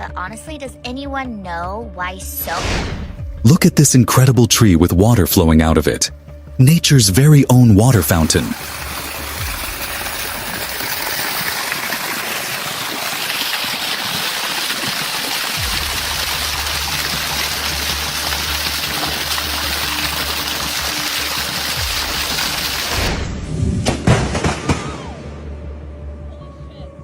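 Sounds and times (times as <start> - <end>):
low rumble: 2.2 - 5.0
water gushing and splashing: 7.9 - 23.6.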